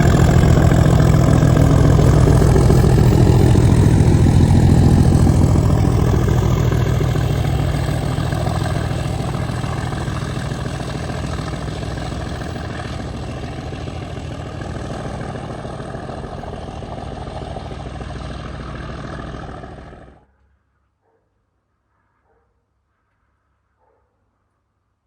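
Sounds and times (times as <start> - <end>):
diesel locomotive engines running: 0.0 - 20.2.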